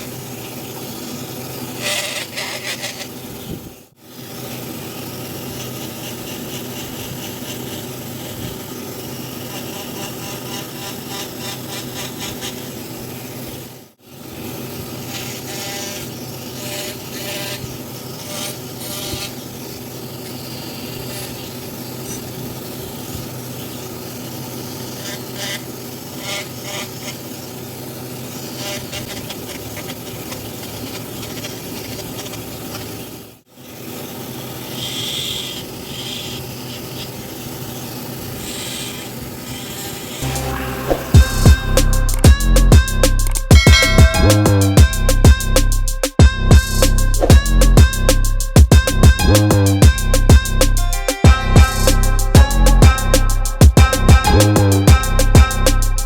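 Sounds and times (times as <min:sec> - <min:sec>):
abrasive tool rasping wood: 0:01.7 - 0:03.1, 0:05.4 - 0:12.6, 0:34.5 - 0:45.3
faint hum: 0:40.2 - 0:45.4.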